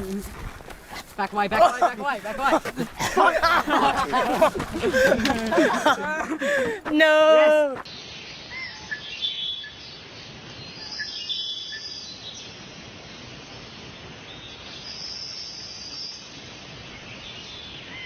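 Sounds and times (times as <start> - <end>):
high held calls: 1.6 - 7.9
steady background hiss: 7.8 - 18.0.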